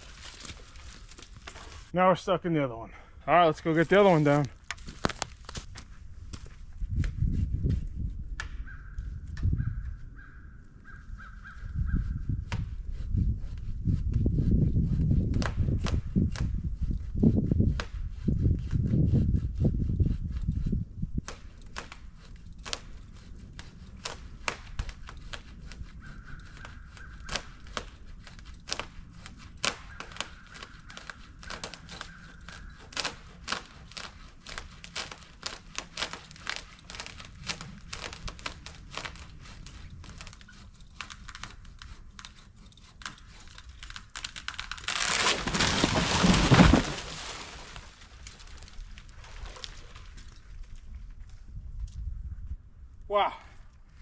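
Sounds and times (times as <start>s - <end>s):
wood snapping and clicking: 4.6s - 5.8s, 29.6s - 50.8s
tree crashing to the ground: 44.1s - 50.2s.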